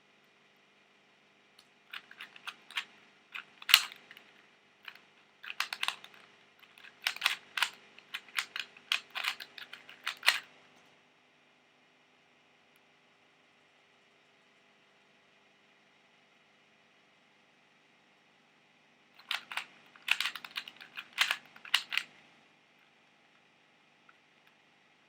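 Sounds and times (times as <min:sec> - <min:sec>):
puzzle cube plastic clicks: 0:01.9 - 0:10.5, 0:19.2 - 0:22.2.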